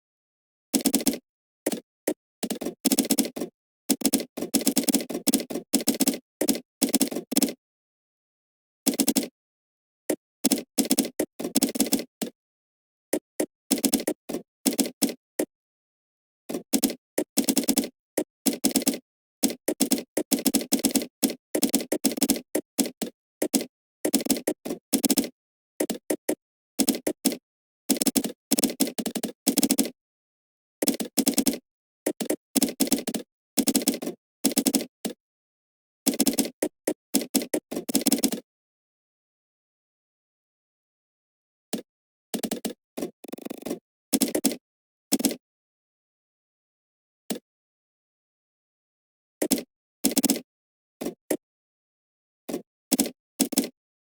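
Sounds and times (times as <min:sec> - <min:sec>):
typing on computer keyboard: 0:00.8 - 0:07.6, 0:08.9 - 0:09.3, 0:10.1 - 0:12.4, 0:13.1 - 0:15.5, 0:16.5 - 0:30.0, 0:30.8 - 0:35.2, 0:36.1 - 0:38.4, 0:41.8 - 0:45.4, 0:49.4 - 0:51.4, 0:52.5 - 0:53.8.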